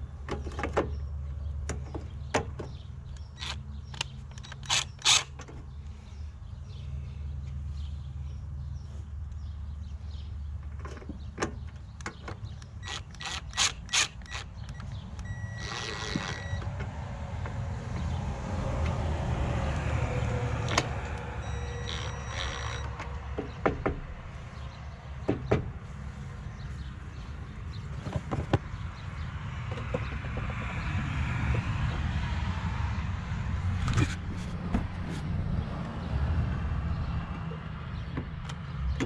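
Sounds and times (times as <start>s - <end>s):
sharp clicks and knocks: 10.6s - 18.1s, 29.7s - 30.8s
steady low rumble: 30.1s - 37.4s.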